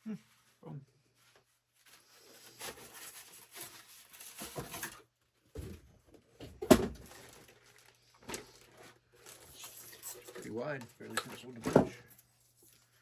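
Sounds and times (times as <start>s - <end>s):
packaging rustling: 6.9s - 13.0s.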